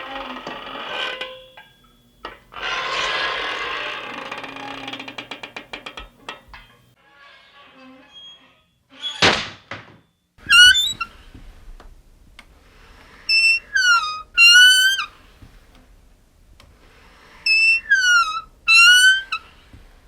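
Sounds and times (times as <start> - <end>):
squeaky door hinge squealing: 7.5 - 9.4, 10.4 - 11.2, 13.3 - 15.1, 17.4 - 19.5.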